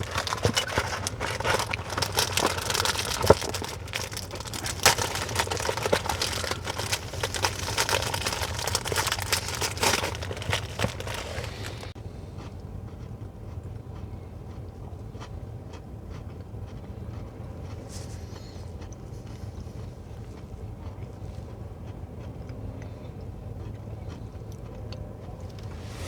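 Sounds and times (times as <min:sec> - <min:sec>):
material crinkling and rustling: 0:00.0 - 0:12.0.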